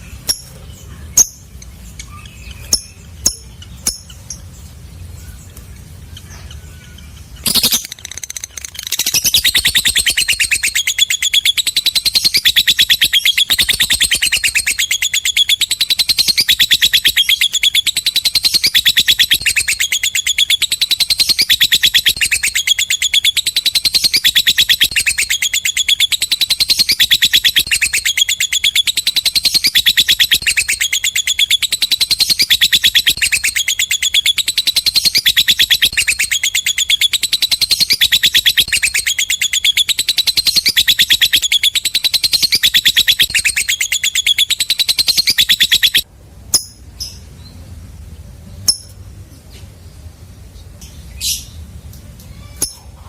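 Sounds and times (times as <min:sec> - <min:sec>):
lovebird singing fast chatter: 0:00.0 - 0:04.6, 0:06.1 - 0:47.2
bird short chirps: 0:06.2 - 0:47.2.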